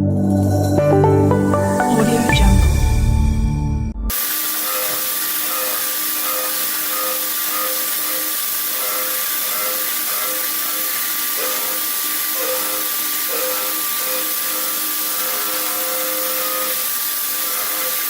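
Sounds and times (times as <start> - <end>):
pulsing tone: 0.3 - 4.2.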